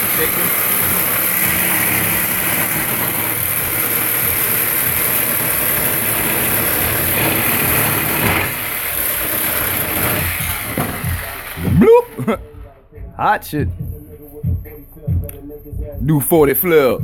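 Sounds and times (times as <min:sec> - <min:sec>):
reciprocating saw cutting metal pipe: 0:00.0 - 0:12.4.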